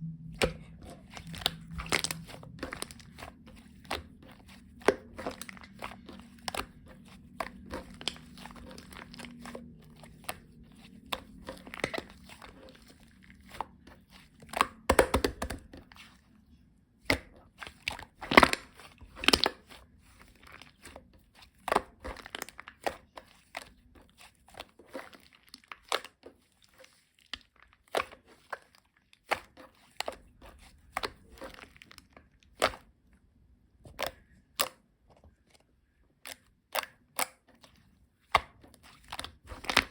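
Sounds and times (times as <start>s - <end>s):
material crinkling with clicks: 0.4s - 13.7s.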